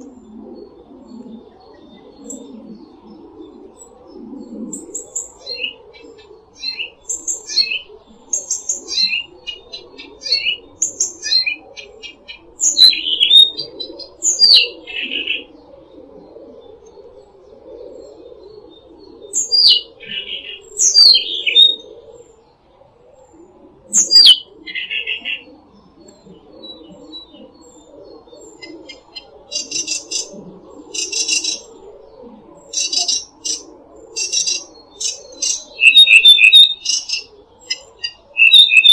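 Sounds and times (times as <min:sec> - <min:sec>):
songbirds singing: 0:00.0 - 0:38.9
buzzy bird trill: 0:28.5 - 0:30.3, 0:30.9 - 0:31.7, 0:32.7 - 0:38.9.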